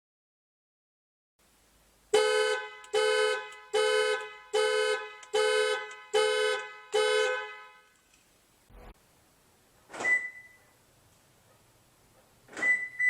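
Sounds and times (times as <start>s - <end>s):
car horn honks: 2.1s - 8.0s.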